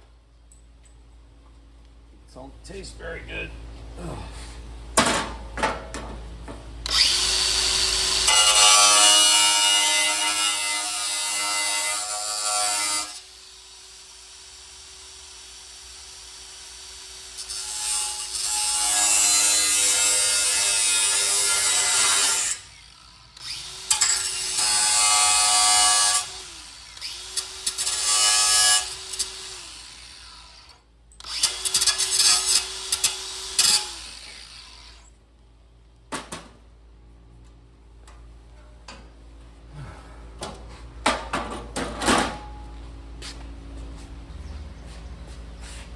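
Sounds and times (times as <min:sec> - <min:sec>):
grinder cutting metal: 0:06.9 - 0:35.1.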